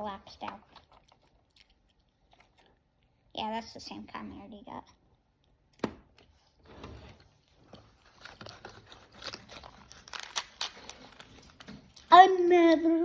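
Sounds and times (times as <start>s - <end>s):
plastic wrapper crinkling: 7.3s - 12.5s.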